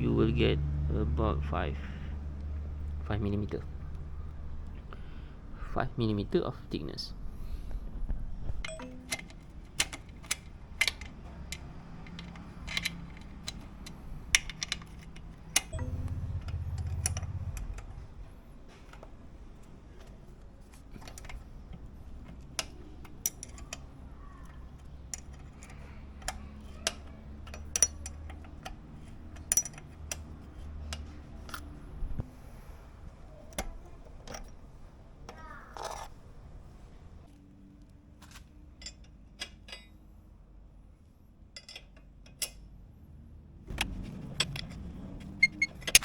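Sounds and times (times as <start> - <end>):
metallic tool clicks and clinks: 8.6 - 15.9, 25.1 - 28.4
low rumble: 15.6 - 18.7.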